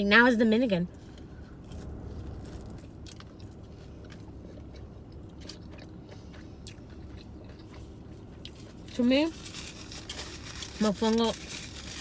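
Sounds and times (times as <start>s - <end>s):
car interior hum: 0.1s - 5.3s
person chewing food: 1.1s - 8.9s.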